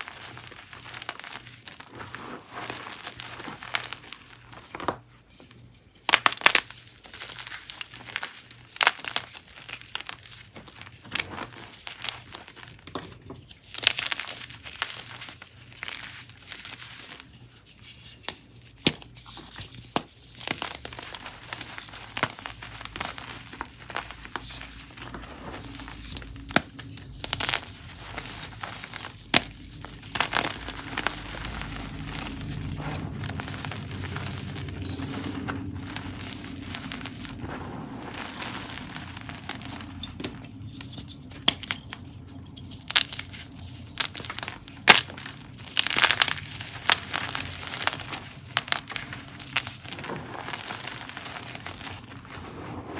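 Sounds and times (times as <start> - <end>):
chalk being crushed: 13.6 - 52.9.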